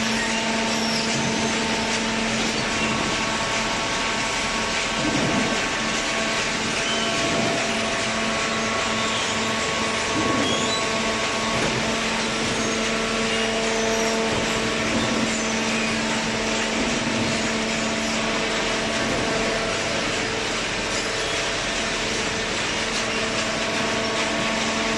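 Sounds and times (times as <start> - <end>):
hydraulic baler motor humming: 0.0 - 24.9.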